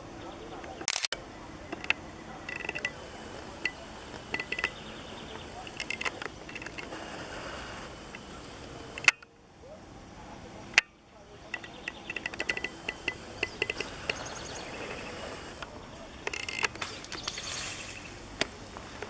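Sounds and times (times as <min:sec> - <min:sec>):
birds chirping: 0:00.0 - 0:19.0
sharp click: 0:00.6 - 0:03.0.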